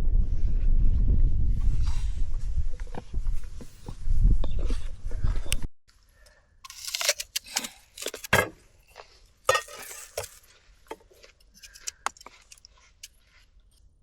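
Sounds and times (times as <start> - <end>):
small objects clattering: 6.7 - 8.6, 9.5 - 12.6.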